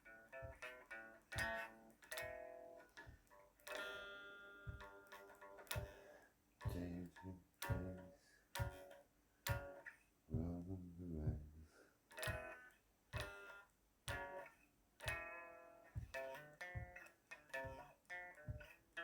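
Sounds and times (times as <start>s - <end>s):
acoustic guitar playing: 0.0s - 19.0s
low bass notes: 6.7s - 8.1s, 10.3s - 11.7s.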